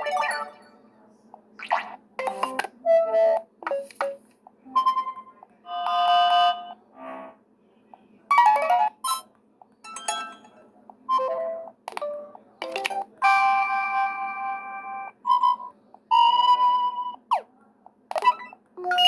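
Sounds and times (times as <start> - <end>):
phone electronic alert chimes: 0.0 - 0.7.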